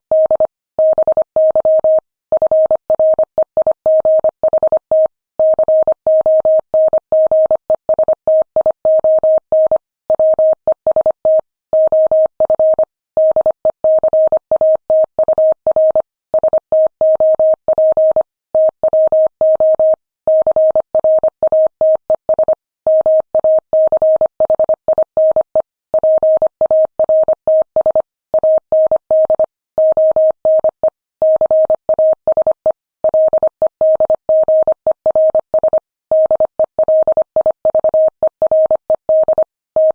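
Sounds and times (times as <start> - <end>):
morse code tone: 33.1 - 39.9.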